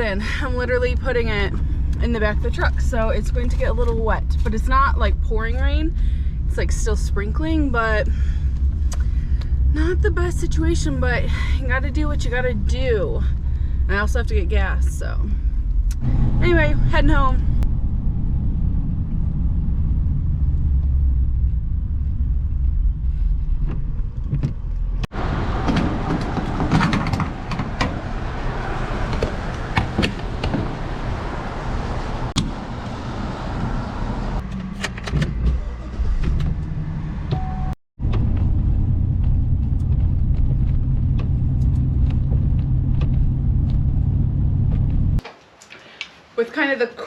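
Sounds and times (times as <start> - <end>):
truck engine and road rumble: 0.0 - 45.2.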